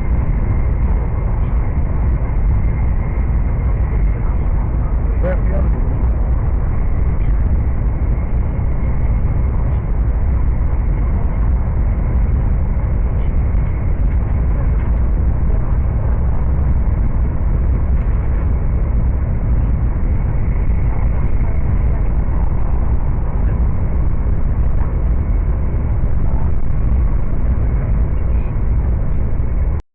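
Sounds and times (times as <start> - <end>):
train interior rumble: 0.0 - 29.8.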